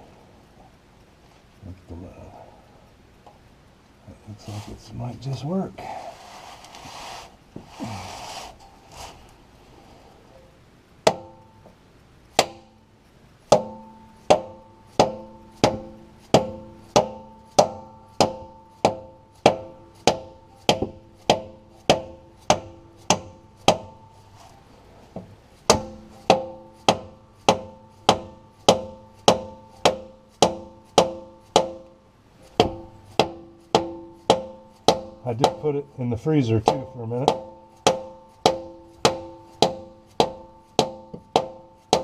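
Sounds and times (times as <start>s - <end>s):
hammer blows ringing: 13.5s - 24.3s, 25.7s - 31.9s, 32.6s - 42.0s.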